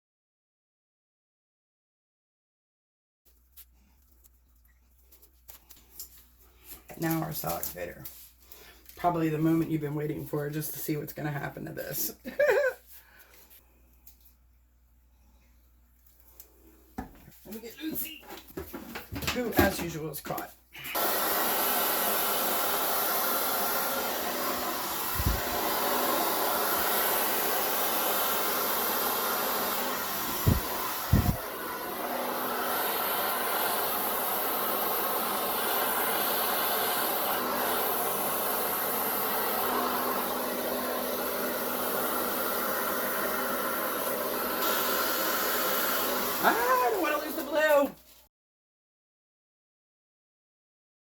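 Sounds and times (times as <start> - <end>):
hair dryer running: 19.3 - 47.8.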